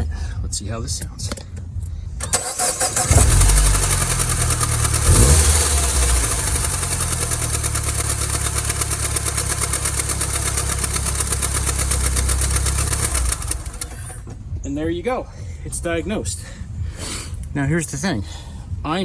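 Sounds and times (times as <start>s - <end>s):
car engine idling: 2.2s - 14.6s
drive belt slapping rattle: 2.3s - 14.2s.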